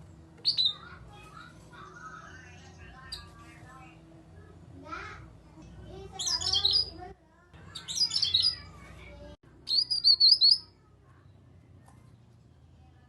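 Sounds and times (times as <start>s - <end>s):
bird chirping and whistling: 0.4s - 0.8s, 6.2s - 6.9s, 7.8s - 8.6s, 9.7s - 10.6s.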